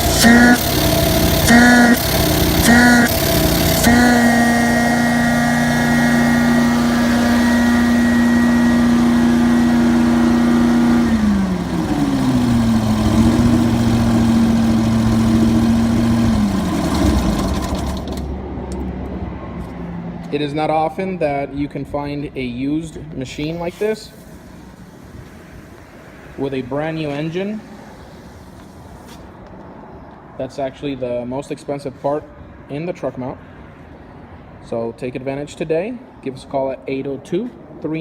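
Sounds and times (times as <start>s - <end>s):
carpet-cleaning machine engine whine: 0.0s - 18.3s.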